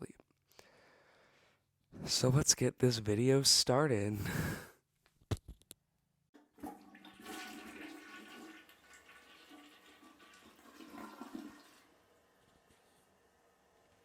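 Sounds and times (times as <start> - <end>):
toilet flushing: 6.4 - 13.9.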